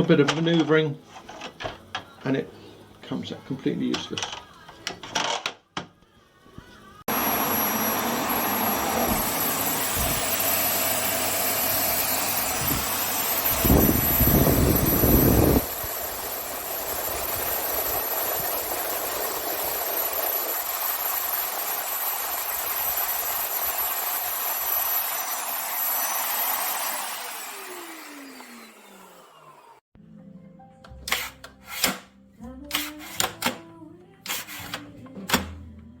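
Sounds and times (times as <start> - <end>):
vacuum cleaner running with high whine: 7.1 - 29.8
vacuum motor spinning down: 7.1 - 29.8.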